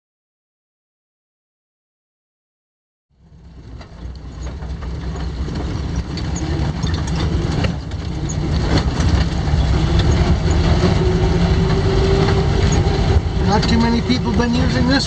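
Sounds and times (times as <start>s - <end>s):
vehicle rumbling on dirt road: 3.1s - 15.0s
knocks and rattles: 3.5s - 15.0s.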